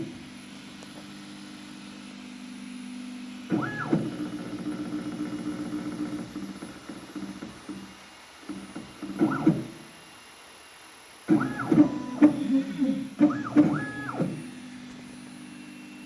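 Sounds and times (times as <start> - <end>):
stepper motor hum: 3.2 - 7.9, 11.3 - 16.0
stepper motor whine: 11.3 - 16.0.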